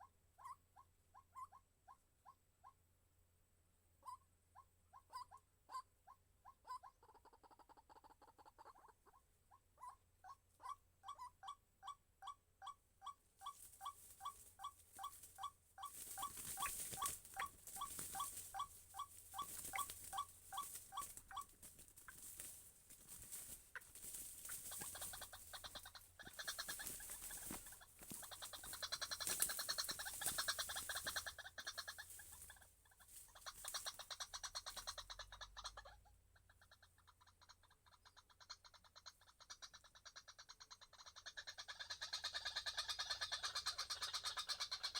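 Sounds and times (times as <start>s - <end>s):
waterhen calling: 11.1s - 44.9s.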